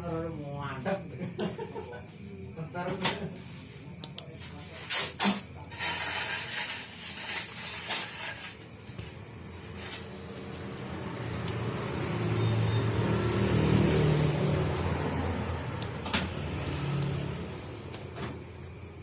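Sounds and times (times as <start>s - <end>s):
low engine hum: 10.1s - 18.8s.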